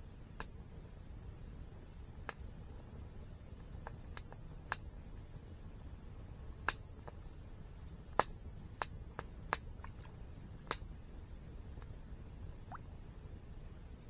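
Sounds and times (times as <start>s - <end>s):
campfire crackling pops: 0.3s - 0.8s, 2.2s - 2.5s, 3.6s - 5.6s, 6.5s - 13.0s.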